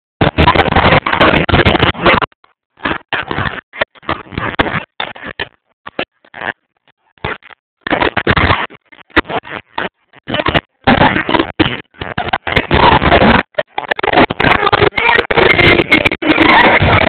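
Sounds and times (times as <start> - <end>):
loud distorted human voice: 10.3 - 17.0.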